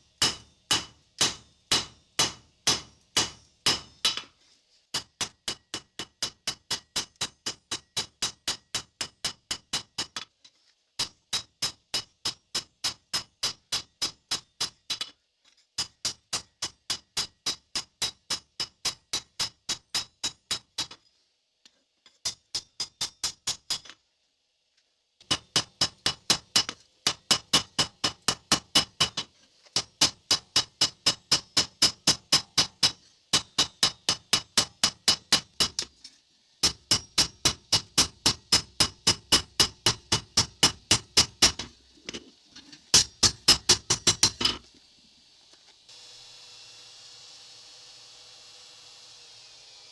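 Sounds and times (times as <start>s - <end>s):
hammer striking hot steel on anvil: 0.2s - 4.3s, 5.0s - 10.2s, 25.3s - 35.9s, 36.6s - 41.7s, 42.9s - 44.6s.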